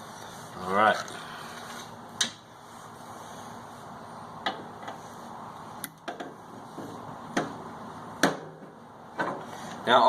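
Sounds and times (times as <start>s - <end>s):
low steady background noise: 0.0s - 10.0s
sharp clicks and knocks: 5.8s - 6.4s, 7.3s - 7.6s.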